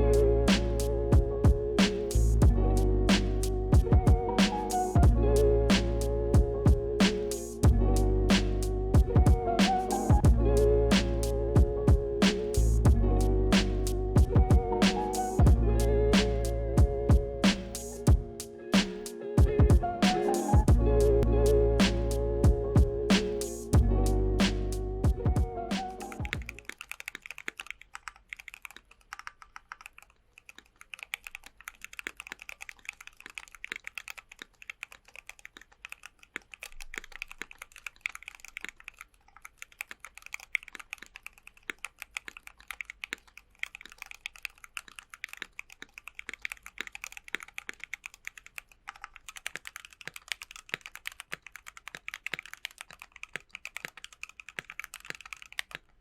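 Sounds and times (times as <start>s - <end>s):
mechanical keyboard typing: 24.5s - 56.0s.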